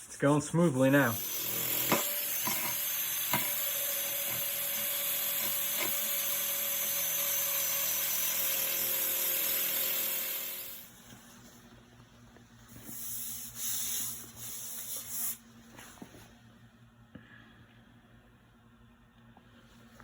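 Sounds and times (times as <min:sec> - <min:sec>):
power tool scouring metal: 0:01.1 - 0:10.8.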